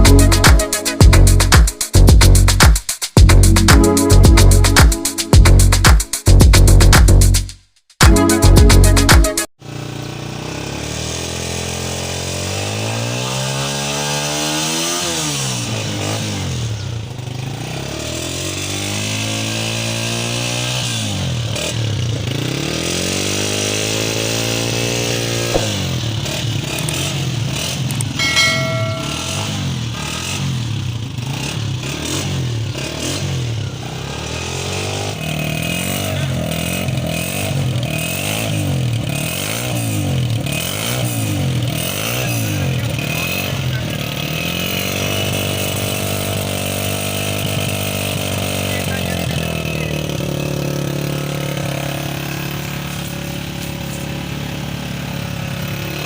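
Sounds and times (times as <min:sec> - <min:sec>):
motorcycle engine revving: 0:09.6 - 0:56.0
brief steady tone: 0:28.2 - 0:29.8.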